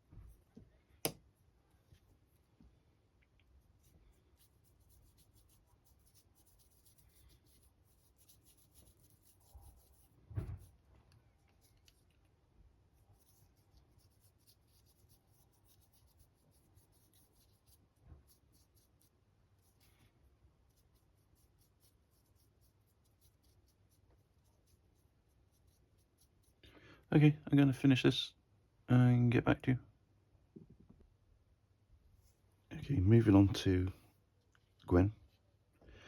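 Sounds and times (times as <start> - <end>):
paintbrush strokes: 0.0 - 26.6.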